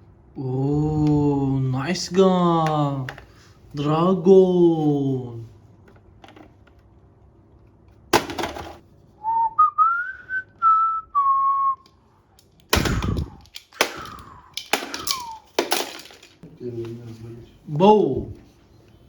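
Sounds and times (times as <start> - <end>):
whistle-like electronic tone: 9.2 - 11.9
toy gun cracks: 12.4 - 16.3.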